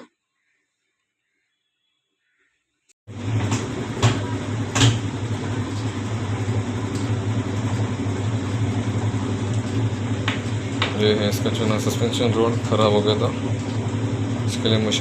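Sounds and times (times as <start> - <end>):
washing machine humming: 3.1 - 15.0.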